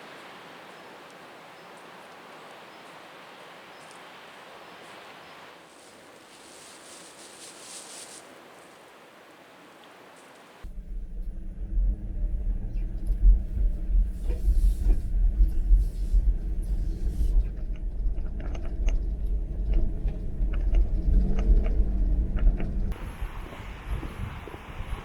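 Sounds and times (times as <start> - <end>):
small ticks and rattles: 5.7 - 8.8
engine running: 10.6 - 24.9.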